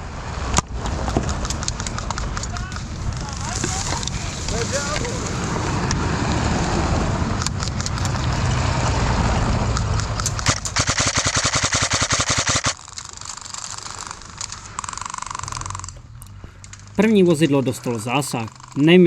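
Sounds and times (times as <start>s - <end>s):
low rumble: 0.0s - 11.0s
airsoft gun shots: 10.4s - 12.8s
airsoft gun full-auto burst: 10.4s - 14.2s.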